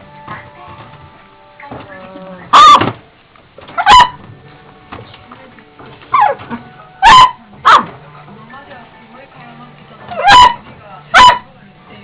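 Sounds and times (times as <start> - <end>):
faint music: 0.0 - 12.0
dog barking: 2.5 - 2.9, 3.8 - 4.2, 6.1 - 8.0, 10.1 - 11.5.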